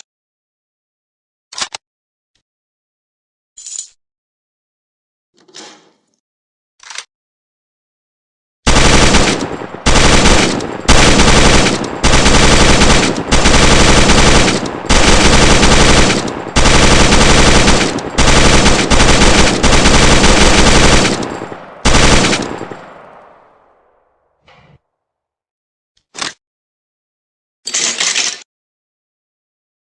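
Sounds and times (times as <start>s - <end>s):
machine gun bursts: 8.7s - 23.6s.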